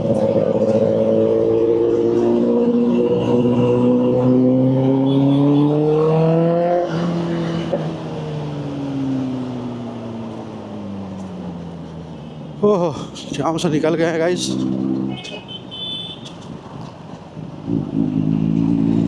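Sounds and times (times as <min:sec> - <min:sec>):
motorcycle engine accelerating: 0:00.0 - 0:12.0, 0:14.4 - 0:15.1, 0:17.4 - 0:19.0.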